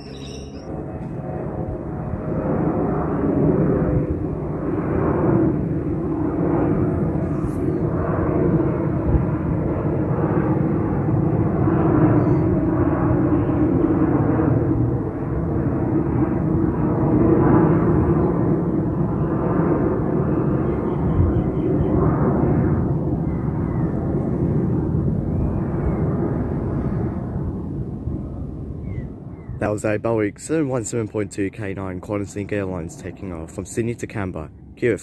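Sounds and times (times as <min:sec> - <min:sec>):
jet airliner taking off: 0:00.0 - 0:35.0.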